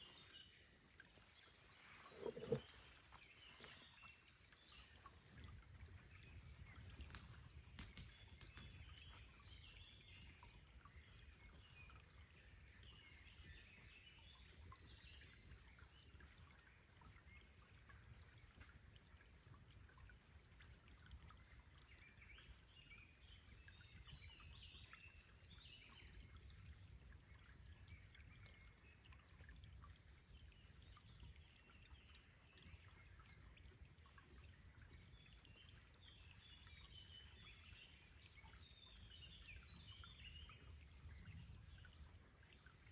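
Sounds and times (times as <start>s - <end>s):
birds chirping: 0.0s - 5.0s
stream trickling: 0.0s - 42.9s.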